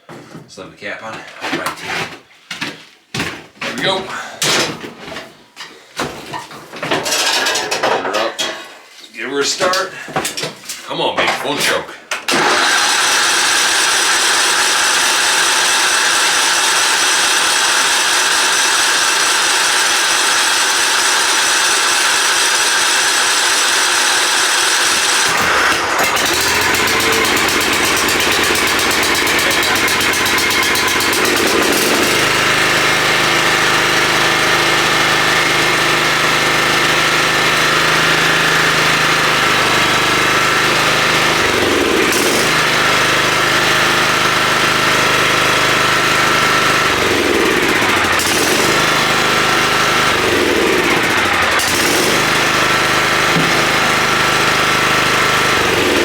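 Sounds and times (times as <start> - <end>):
lawn mower engine running: 7.0 - 8.2, 12.3 - 56.0
electric starter cranking: 12.1 - 56.0.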